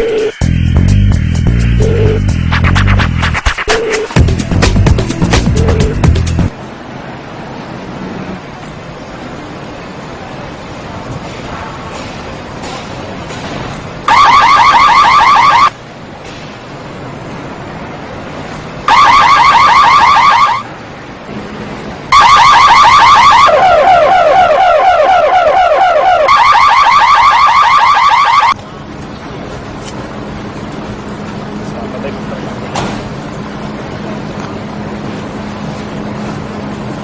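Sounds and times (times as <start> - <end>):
car alarm chirping warble: 14.1 - 15.7, 18.9 - 20.6, 22.1 - 28.6.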